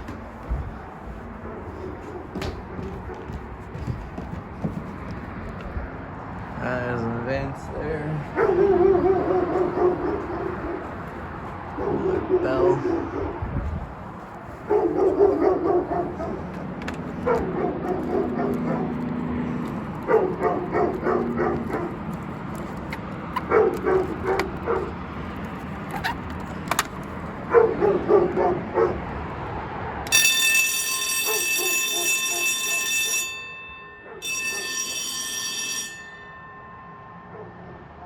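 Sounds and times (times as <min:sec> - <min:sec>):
fire alarm bell ringing: 0:30.1 - 0:38.0.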